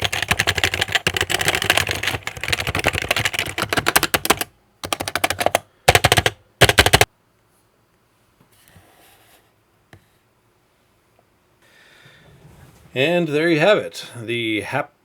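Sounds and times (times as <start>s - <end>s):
keyboard typing: 0.0s - 7.1s.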